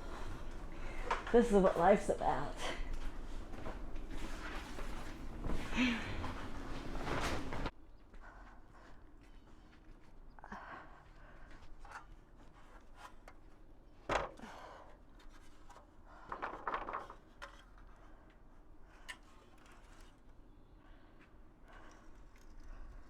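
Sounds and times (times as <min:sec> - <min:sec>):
rustling and scraping: 0:03.0 - 0:07.8, 0:18.8 - 0:20.5.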